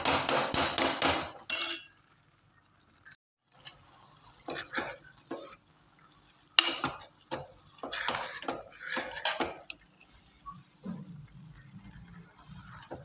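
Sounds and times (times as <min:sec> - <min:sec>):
metal utensils clinking: 0:01.5 - 0:02.0.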